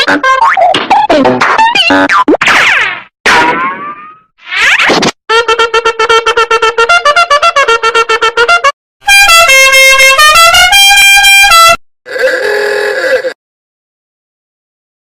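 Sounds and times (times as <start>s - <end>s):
horn-like melody: 5.3s - 11.8s.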